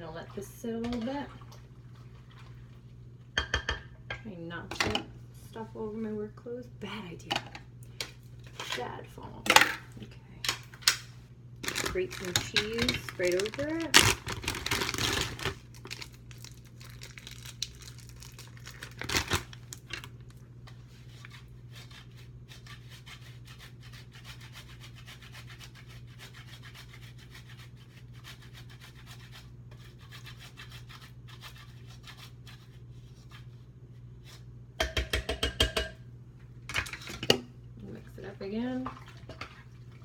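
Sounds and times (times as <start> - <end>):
cheese scraping on grater: 21.1 - 33.6.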